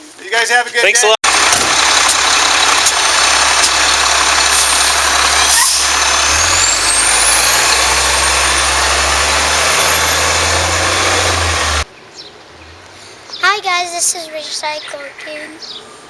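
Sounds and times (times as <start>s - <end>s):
truck engine running: 1.2s - 11.9s
high whine rising in pitch: 1.3s - 11.9s.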